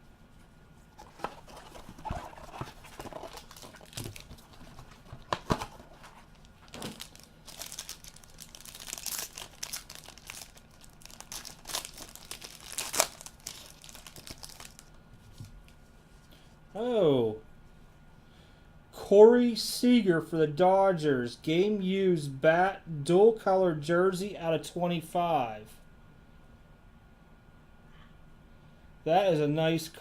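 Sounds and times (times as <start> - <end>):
wrapper crinkling and tearing: 1.0 - 15.0
sharp packaging snaps: 2.3 - 14.9.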